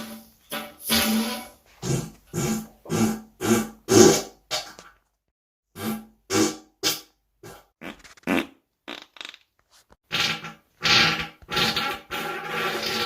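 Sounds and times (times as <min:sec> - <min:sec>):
human farts: 0:07.8 - 0:13.0.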